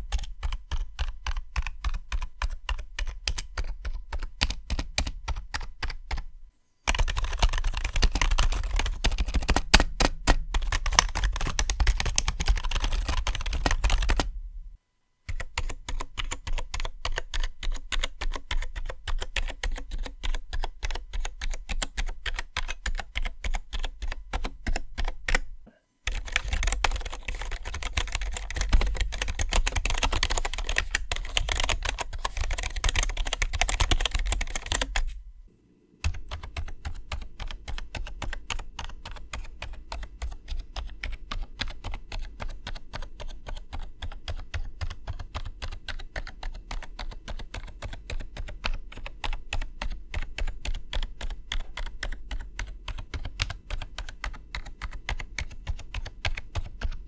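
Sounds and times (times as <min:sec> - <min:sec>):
fast keyboard typing: 0:00.0 - 0:14.4, 0:15.3 - 0:35.2, 0:36.0 - 0:57.0.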